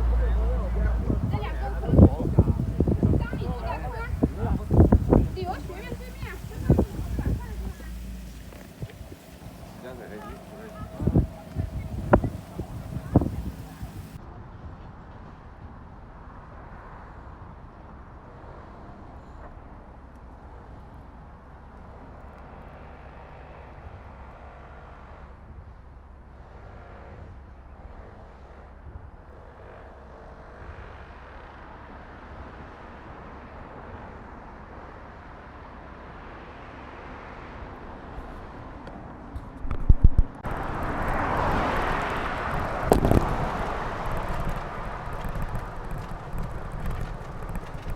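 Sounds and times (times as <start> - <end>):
road noise: 0.0 - 14.2, 30.1 - 47.9
wind rumble on microphone: 0.0 - 18.3, 30.7 - 47.9.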